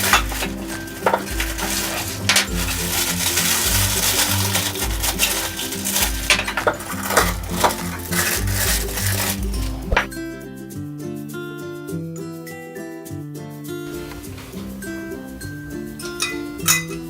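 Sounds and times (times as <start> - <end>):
packaging rustling: 0.0 - 10.1
background music with bass line: 0.0 - 12.4.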